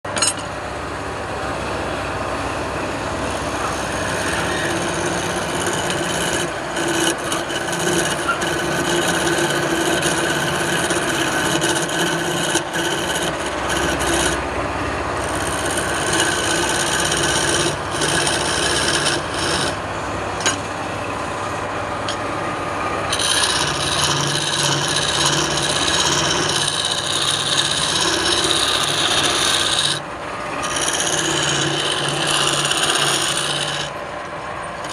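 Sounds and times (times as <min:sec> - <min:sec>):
lathe motor hum: 0:00.6 - 0:34.9
lathe tool scraping wood: 0:03.2 - 0:20.6, 0:22.6 - 0:34.0.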